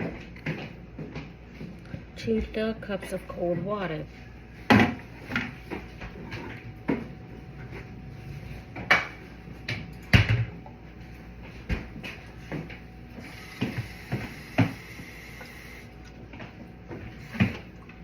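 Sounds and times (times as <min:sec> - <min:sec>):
dishes knocking and clunking: 0:04.7 - 0:07.1, 0:08.8 - 0:10.6.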